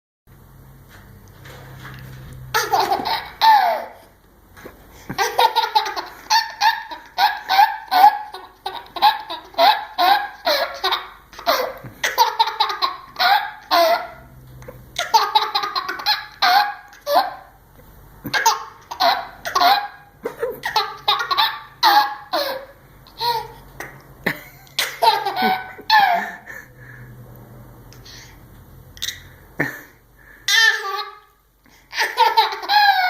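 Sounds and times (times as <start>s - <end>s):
child laughing with hiccups: 2.5s - 4.1s, 5.0s - 14.3s, 18.2s - 26.7s, 29.0s - 31.3s, 31.9s - 33.0s.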